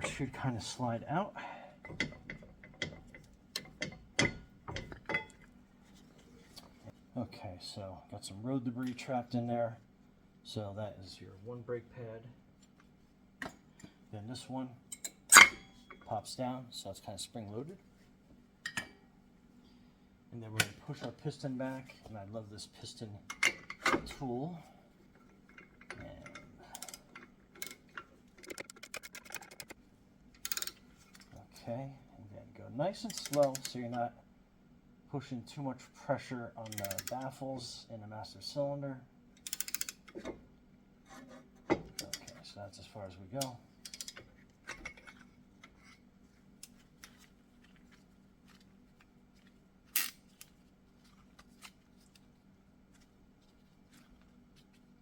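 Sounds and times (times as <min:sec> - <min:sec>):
faint steady hum: 0:00.0 - 0:55.0
small metallic clicks: 0:28.4 - 0:29.8, 0:30.4 - 0:31.3, 0:33.1 - 0:33.8, 0:36.6 - 0:37.2, 0:39.4 - 0:40.4, 0:43.4 - 0:45.8.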